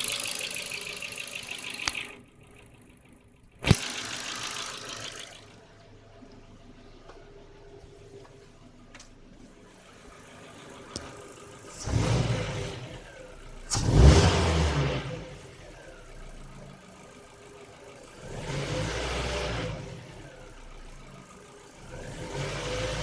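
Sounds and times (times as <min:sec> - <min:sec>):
engine clacking noise: 0:00.0 - 0:05.8
car engine idling and revving: 0:00.0 - 0:23.0.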